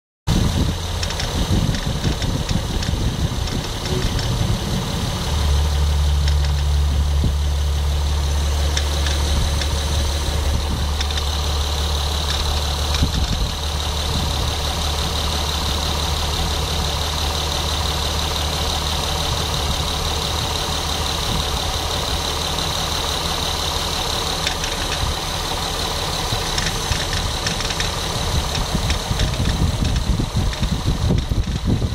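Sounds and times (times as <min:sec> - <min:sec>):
car engine idling: 0:00.3 - 0:31.9
engine knocking: 0:00.3 - 0:31.9
low hum: 0:01.0 - 0:15.1.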